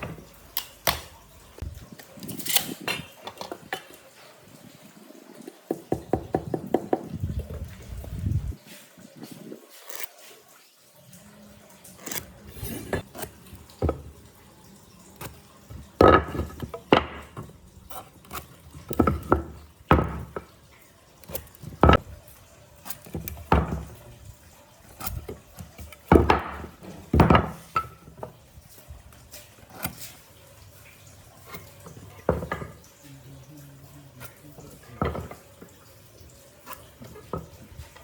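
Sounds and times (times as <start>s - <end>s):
hard objects knocking and clunking: 0.0s - 4.0s, 5.5s - 8.6s, 12.1s - 14.3s, 15.2s - 20.6s, 21.2s - 22.2s, 23.0s - 24.2s, 25.1s - 28.4s, 31.6s - 32.8s, 34.6s - 35.8s.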